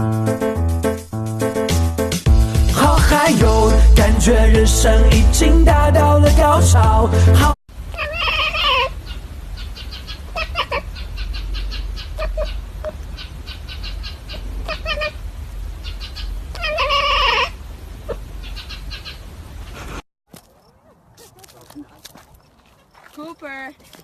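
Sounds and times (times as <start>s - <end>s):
cat meowing: 7.9s - 9.0s, 16.5s - 18.2s.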